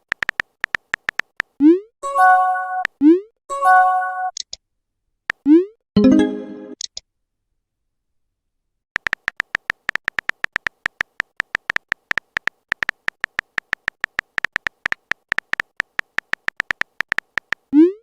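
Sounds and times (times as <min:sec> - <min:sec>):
phone keyboard typing clicks: 0:00.0 - 0:01.5, 0:09.0 - 0:17.7.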